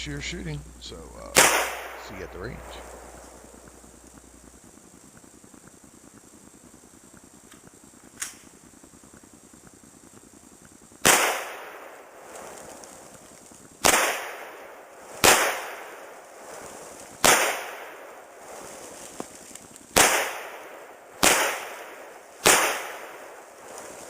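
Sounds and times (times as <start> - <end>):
rifle shots with echo: 1.4 - 3.8, 11.0 - 12.3, 13.8 - 16.5, 17.2 - 18.4, 19.9 - 24.0.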